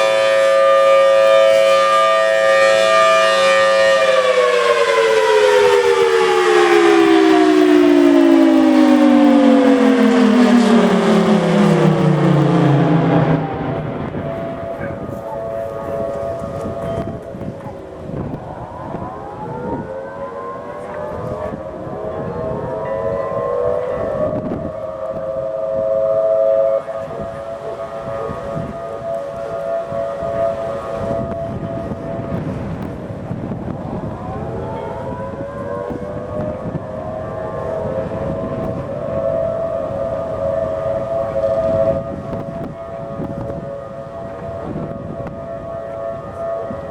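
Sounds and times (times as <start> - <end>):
warning siren winding down: 0.0 - 46.9.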